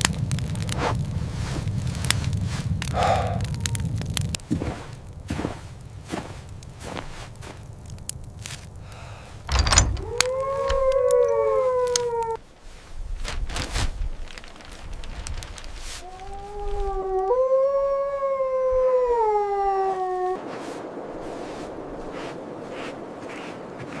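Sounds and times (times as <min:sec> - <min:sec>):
wolves howling: 0:09.5 - 0:12.4, 0:16.0 - 0:20.4.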